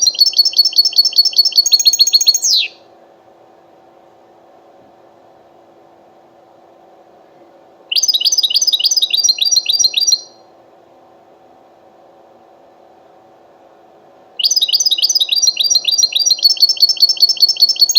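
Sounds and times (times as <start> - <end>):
bird chirping rapidly: 0.0 - 2.8, 7.9 - 10.4, 14.4 - 17.9
faint steady hum: 0.0 - 17.9.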